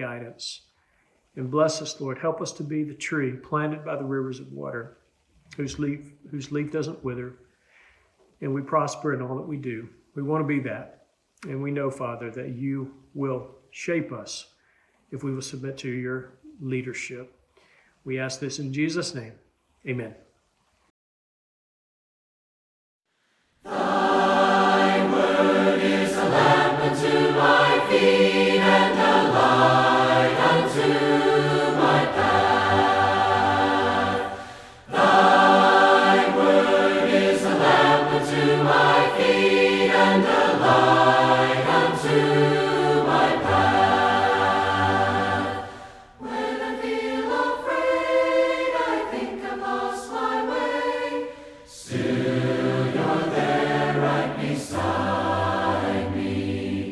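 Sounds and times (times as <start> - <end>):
choir singing a hymn: 23.6 - 56.9.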